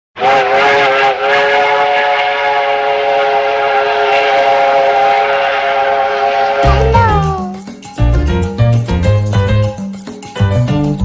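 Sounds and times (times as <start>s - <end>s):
steam train whistle: 0.2s - 6.7s.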